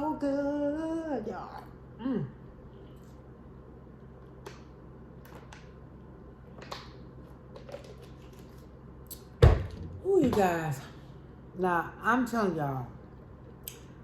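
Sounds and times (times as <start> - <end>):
loud thump: 9.4 - 10.5.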